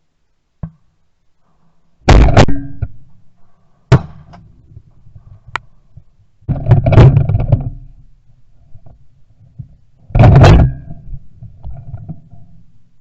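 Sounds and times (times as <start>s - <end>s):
shotgun shots: 2.1s - 2.7s.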